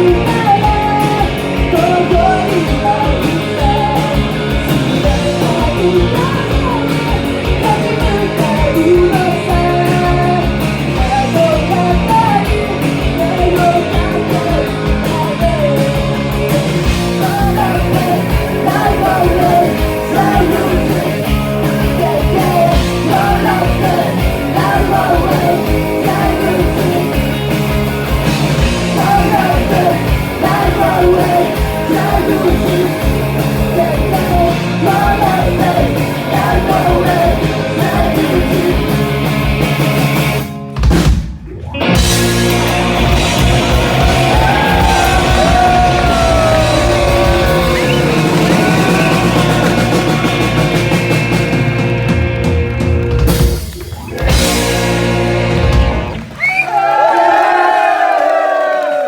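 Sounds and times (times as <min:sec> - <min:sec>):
person singing: 0:00.0 - 0:16.2, 0:17.1 - 0:27.3, 0:28.8 - 0:39.0, 0:43.9 - 0:51.0
live rock band music: 0:00.0 - 0:56.4.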